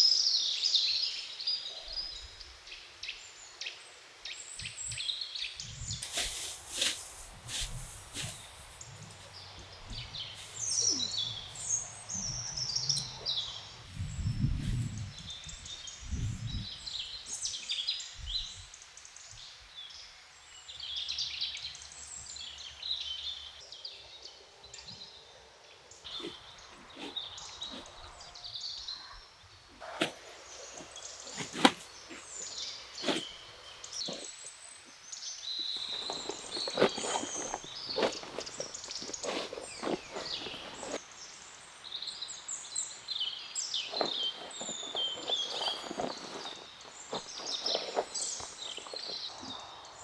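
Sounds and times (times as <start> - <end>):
birds singing: 0.0 - 50.0.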